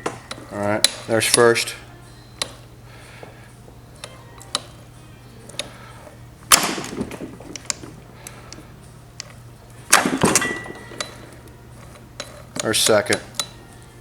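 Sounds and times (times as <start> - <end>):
gearbox clunks and clicks: 6.5 - 8.6
loud metal clanks: 9.9 - 11.3.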